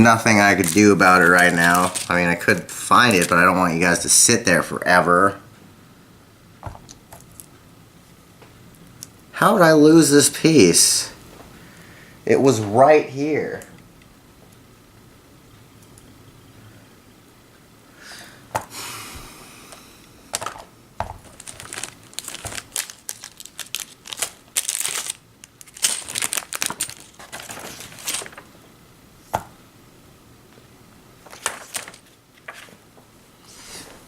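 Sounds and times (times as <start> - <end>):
plastic bags crinkling: 0.0 - 3.9, 20.4 - 28.5, 31.2 - 32.7.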